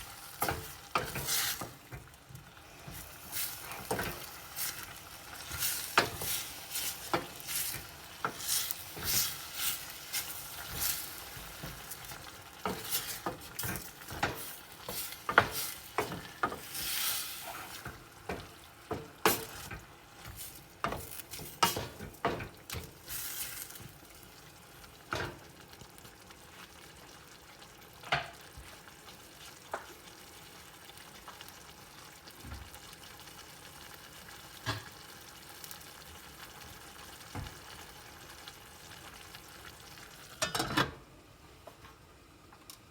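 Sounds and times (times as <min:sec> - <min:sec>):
utensil stirring and scraping pan: 0:00.0 - 0:02.1, 0:02.7 - 0:24.0
food sizzling: 0:00.0 - 0:40.6.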